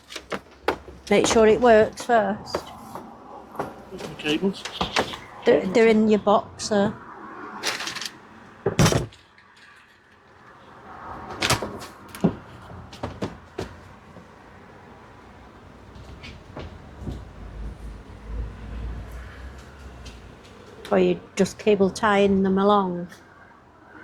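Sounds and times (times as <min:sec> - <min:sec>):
knocks and clunks of handling: 0:00.0 - 0:05.8, 0:07.6 - 0:09.7, 0:11.0 - 0:17.9.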